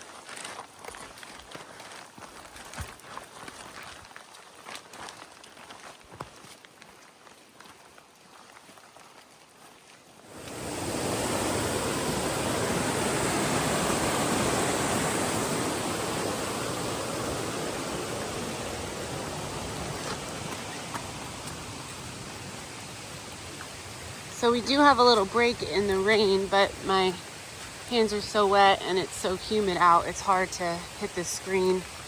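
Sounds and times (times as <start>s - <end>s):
flowing water rushing: 7.4s - 32.0s.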